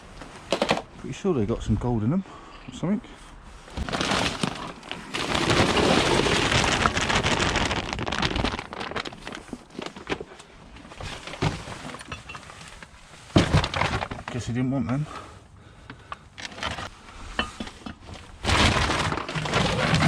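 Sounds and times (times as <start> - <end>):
rubbish rustling and clattering: 0.1 - 1.0, 3.6 - 15.1, 16.4 - 20.0.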